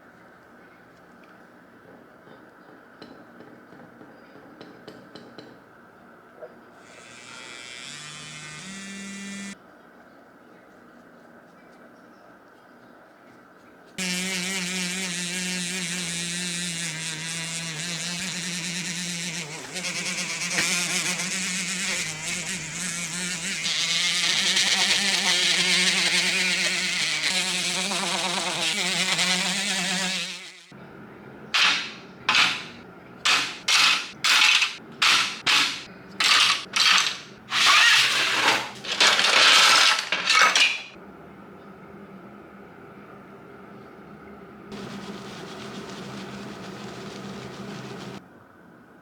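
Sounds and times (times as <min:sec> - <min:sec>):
electric power tool whirring: 0:06.8 - 0:09.6, 0:14.0 - 0:30.7, 0:31.6 - 0:40.9
short hissing bursts: 0:44.8 - 0:48.2.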